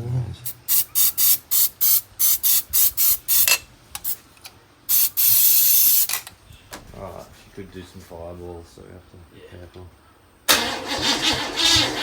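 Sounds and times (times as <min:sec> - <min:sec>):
aerosol can spraying: 0:00.6 - 0:04.2, 0:04.9 - 0:06.1.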